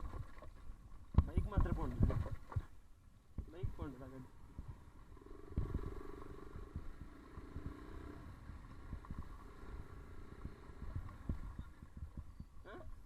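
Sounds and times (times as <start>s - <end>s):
wind buffeting microphone: 0.0s - 13.0s
motorcycle engine at low revs: 1.0s - 13.0s.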